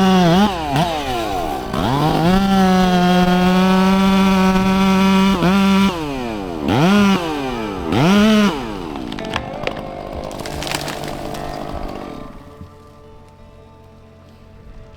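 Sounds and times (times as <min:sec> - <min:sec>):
chainsaw revving and idling: 0:00.0 - 0:14.6
sharp cracks: 0:06.8 - 0:12.4.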